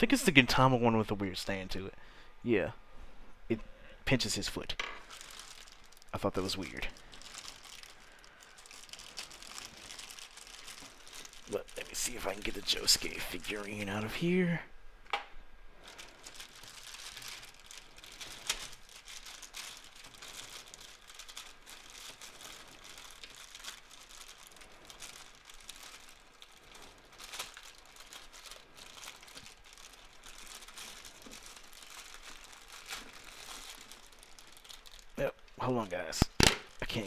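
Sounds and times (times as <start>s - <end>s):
packaging crinkling and rustling: 5.0s - 14.5s, 15.8s - 37.0s.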